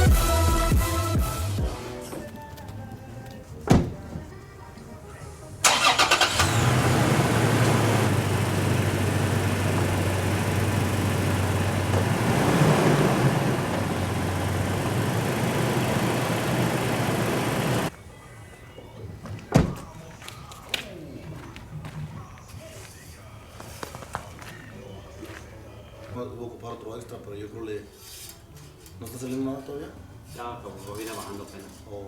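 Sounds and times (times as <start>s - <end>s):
thump: 3.7s - 4.2s, 19.5s - 19.8s
truck engine cranking and idling: 5.6s - 17.9s.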